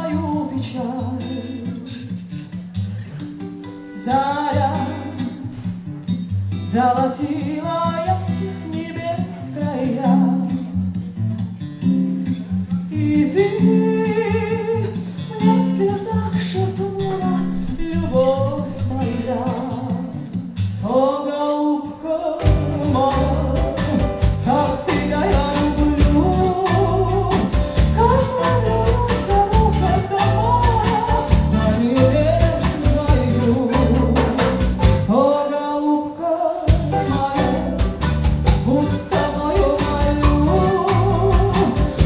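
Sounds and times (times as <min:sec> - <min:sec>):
guitar: 0:00.0 - 0:42.0
person singing: 0:04.0 - 0:05.5, 0:12.7 - 0:42.0
bass guitar: 0:22.4 - 0:35.2, 0:36.7 - 0:42.0
drums: 0:22.4 - 0:35.2, 0:36.7 - 0:42.0.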